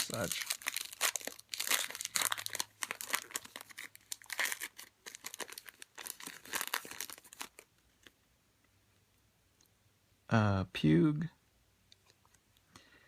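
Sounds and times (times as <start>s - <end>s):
foil wrapper crinkling and tearing: 0.0s - 8.1s.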